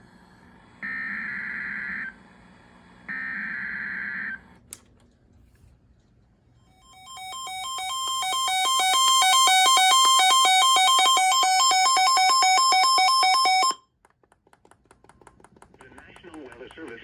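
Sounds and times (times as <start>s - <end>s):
two-tone electronic alert warble: 6.7s - 13.8s.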